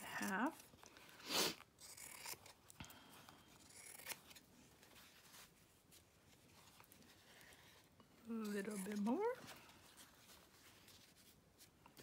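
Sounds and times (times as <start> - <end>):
scissors snipping: 3.7 - 4.4.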